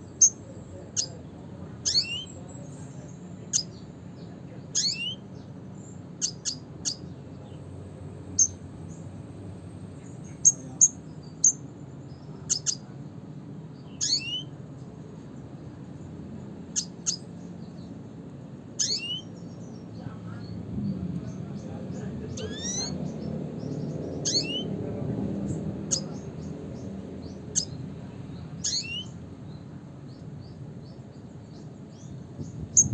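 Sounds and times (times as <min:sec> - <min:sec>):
faint low hum: 0:00.0 - 0:32.9
bird calling high notes: 0:18.8 - 0:19.3, 0:24.2 - 0:24.8.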